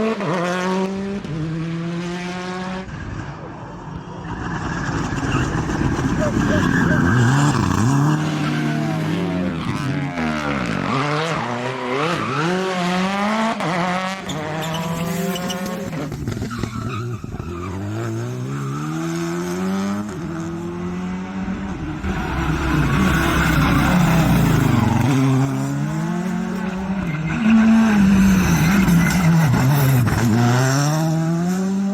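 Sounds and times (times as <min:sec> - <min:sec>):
rally car engines racing: 0:00.0 - 0:31.9
tyres squealing on tarmac: 0:04.9 - 0:07.9, 0:14.2 - 0:19.0.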